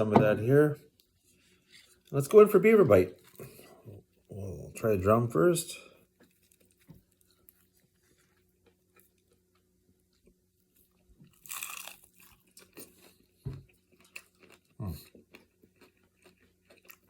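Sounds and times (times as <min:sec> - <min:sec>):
chewing and crunching: 0:03.0 - 0:04.5, 0:06.0 - 0:17.0.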